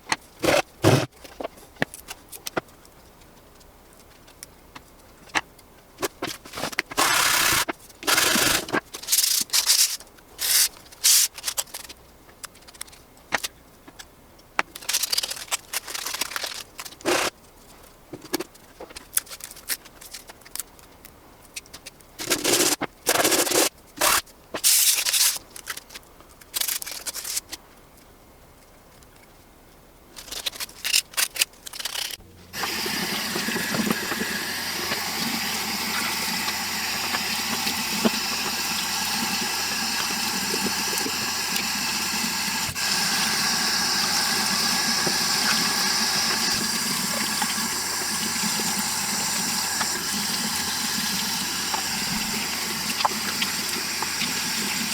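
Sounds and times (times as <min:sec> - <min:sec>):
hand sanding plastic parts: 0:06.2 - 0:11.9, 0:14.7 - 0:17.3, 0:22.2 - 0:25.9, 0:30.2 - 0:54.9.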